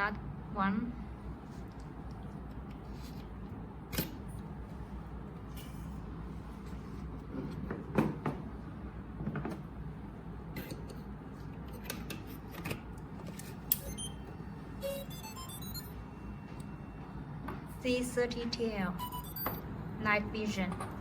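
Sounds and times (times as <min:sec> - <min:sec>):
short electronic tones: 0:13.8 - 0:14.2, 0:14.8 - 0:16.9, 0:19.0 - 0:19.6.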